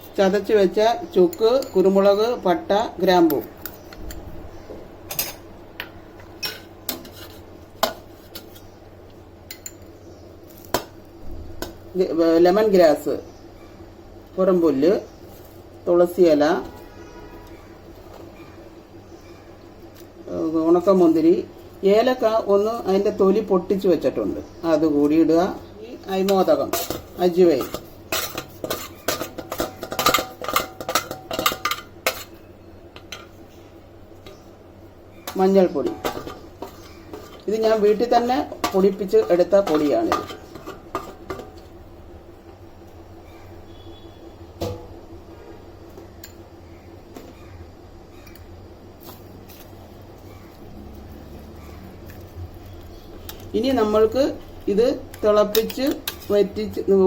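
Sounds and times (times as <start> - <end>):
utensils clinking on cookware: 5.1 - 8.6, 26.1 - 33.4, 35.2 - 41.7, 53.5 - 57.0.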